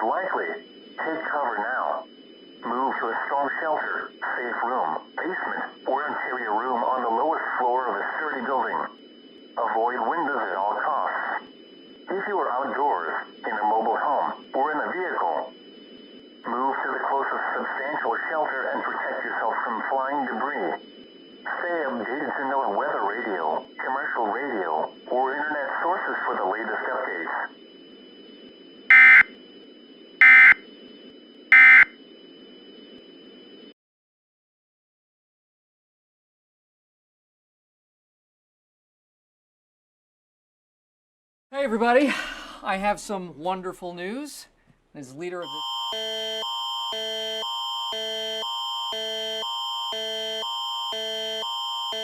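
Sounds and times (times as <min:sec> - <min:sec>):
faint radio hiss: 0:00.0 - 0:31.9
data tone bursts: 0:27.8 - 0:32.0
steady high tone: 0:28.9 - 0:29.3, 0:30.2 - 0:30.6, 0:31.5 - 0:31.9.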